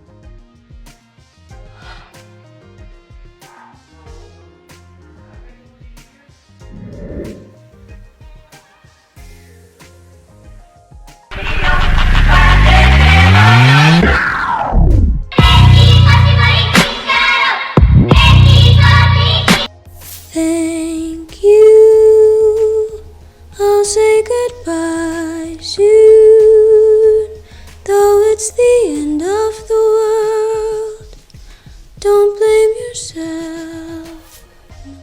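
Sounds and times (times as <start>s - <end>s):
high voice humming: 6.6s - 7.6s.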